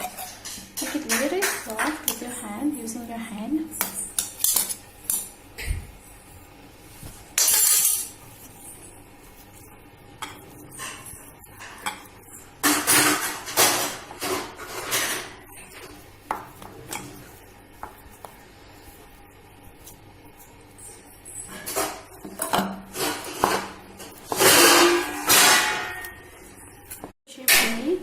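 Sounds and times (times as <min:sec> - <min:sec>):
pan and utensils clinking: 0:00.0 - 0:02.4, 0:07.4 - 0:08.2, 0:12.6 - 0:16.0, 0:21.4 - 0:26.4
utensil scraping pan: 0:07.4 - 0:18.2, 0:19.9 - 0:27.1.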